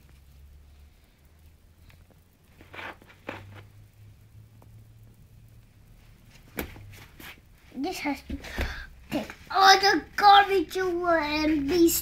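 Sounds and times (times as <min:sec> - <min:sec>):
low steady hum: 0:00.0 - 0:12.0
handling rustles and taps: 0:06.3 - 0:07.4.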